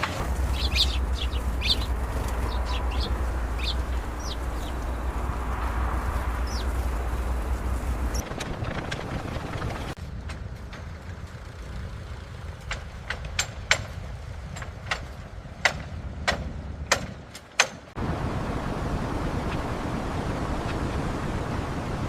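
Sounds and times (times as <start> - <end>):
dense steady rumble: 0.0 - 17.3
low engine rumble: 0.0 - 22.0
sharp knocks: 12.7 - 17.9.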